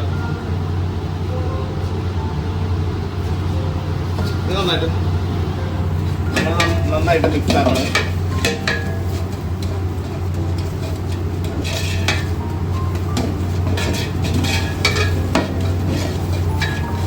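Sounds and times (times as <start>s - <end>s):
masala sizzling: 0.0s - 17.0s
steady low hum: 0.0s - 17.0s
ladle scraping cooking pot: 5.9s - 17.0s.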